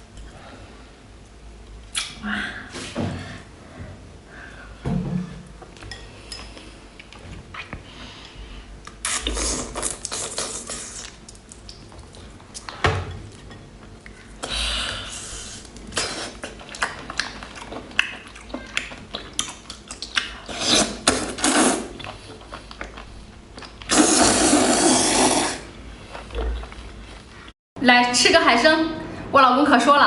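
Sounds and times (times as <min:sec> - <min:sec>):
noodles slurped: 0:09.0 - 0:11.3, 0:15.2 - 0:22.4, 0:23.8 - 0:25.7
chewing: 0:15.6 - 0:24.0.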